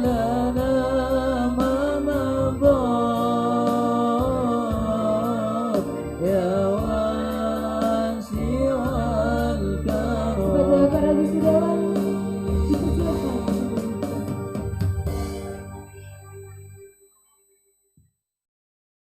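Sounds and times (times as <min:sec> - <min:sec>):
men singing wavering melody: 0:00.0 - 0:14.7
keyboard with steady beat: 0:00.0 - 0:18.1.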